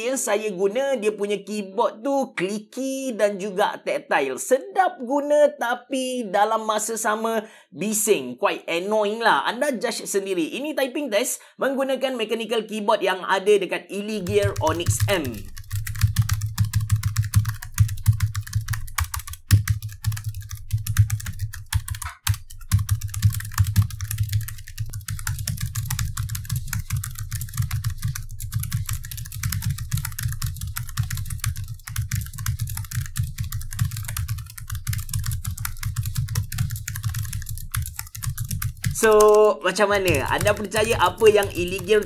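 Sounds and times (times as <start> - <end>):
fast typing on keyboard: 14.1 - 42.0.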